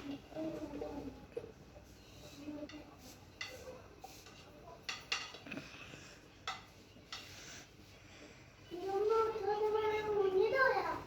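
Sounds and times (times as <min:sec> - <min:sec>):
metal utensils clinking on pot: 0:02.6 - 0:05.5.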